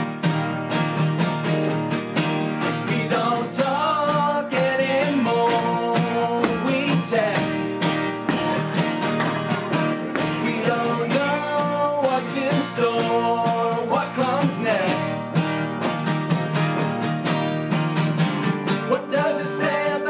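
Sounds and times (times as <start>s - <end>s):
strummed guitars: 0.0s - 20.0s
person singing: 2.7s - 15.3s, 18.8s - 20.0s
steady drum beat: 6.4s - 7.3s, 8.2s - 11.1s.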